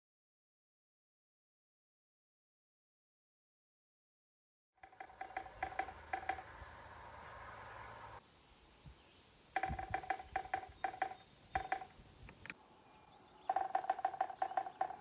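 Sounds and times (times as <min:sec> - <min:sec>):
woodpecker pecking: 0:04.8 - 0:08.2, 0:09.6 - 0:12.6, 0:13.4 - 0:15.0.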